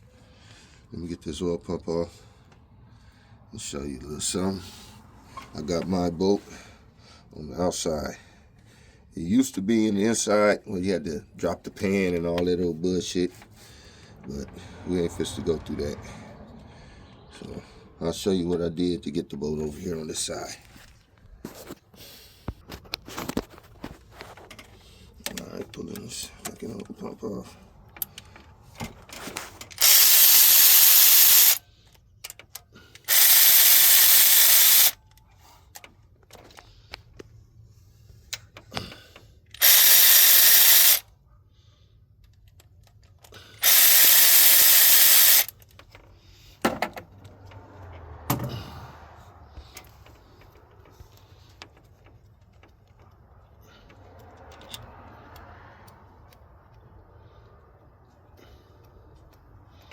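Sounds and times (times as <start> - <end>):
sharp metal clicks: 29.6 - 36.0, 39.5 - 41.1, 42.2 - 46.1
power tool whirring: 29.8 - 31.6, 33.0 - 35.0, 39.6 - 41.0, 43.6 - 45.6.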